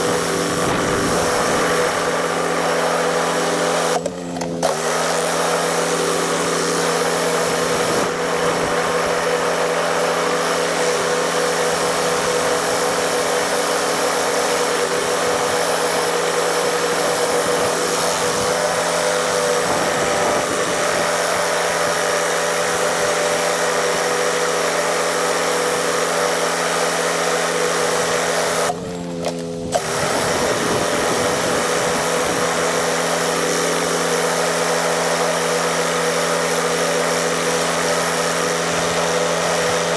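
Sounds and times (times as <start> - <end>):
water spray hissing: 0.0 - 4.0, 4.6 - 28.8, 29.7 - 39.9
pressure washer pump drone: 0.0 - 39.9.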